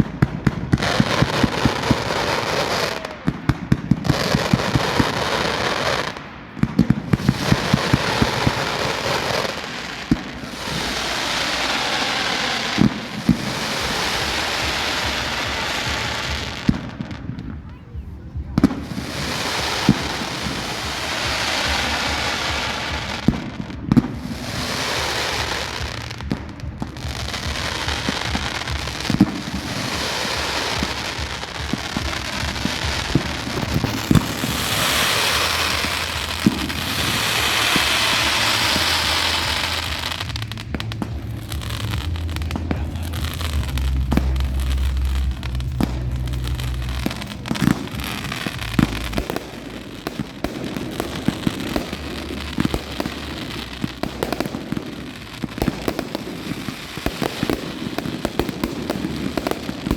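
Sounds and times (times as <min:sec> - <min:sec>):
firework bangs: 0:00.0 - 0:59.9
crackling fizzing sparks: 0:19.2 - 0:59.9
deep rumble: 0:24.1 - 0:57.5.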